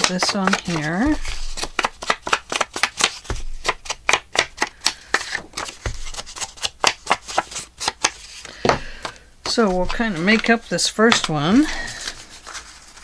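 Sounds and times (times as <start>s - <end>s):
sharp taps on paper: 0.0s - 7.2s.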